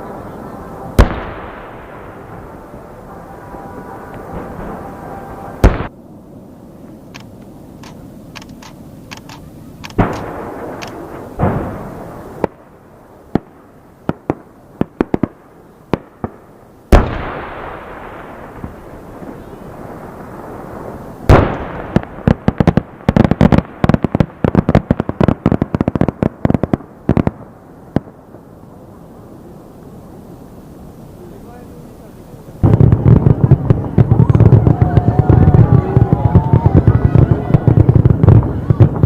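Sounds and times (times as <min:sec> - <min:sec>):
fireworks bangs and pops: 0:00.0 - 0:06.0, 0:06.8 - 0:12.7, 0:13.3 - 0:28.4, 0:32.6 - 0:39.0
fireworks booms with rumbling tails: 0:00.0 - 0:09.0, 0:09.6 - 0:39.0
crackling fireworks pops: 0:03.5 - 0:06.0, 0:06.8 - 0:29.1, 0:32.6 - 0:39.0.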